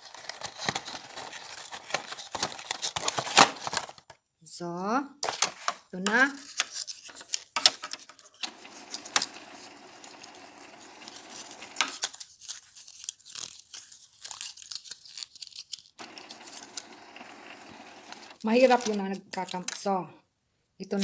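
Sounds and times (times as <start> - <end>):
packaging being torn open: 0.0 - 4.1, 6.3 - 7.9, 11.0 - 17.1
plastic rustling: 0.0 - 4.2, 5.2 - 19.9.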